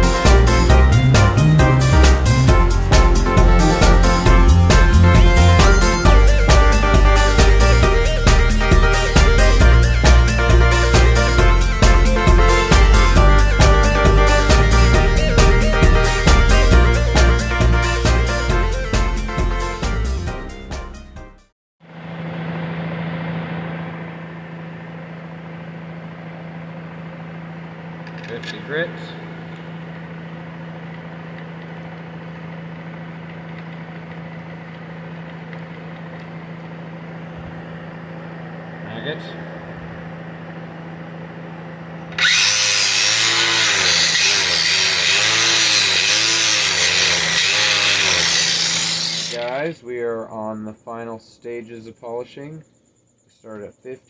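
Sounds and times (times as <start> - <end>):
angle grinder polishing stone: 0.0 - 13.9, 42.2 - 49.5.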